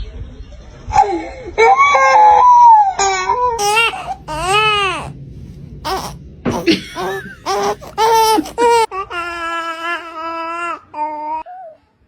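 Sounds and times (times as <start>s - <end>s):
baby crying: 1.6s - 5.1s, 5.9s - 11.5s.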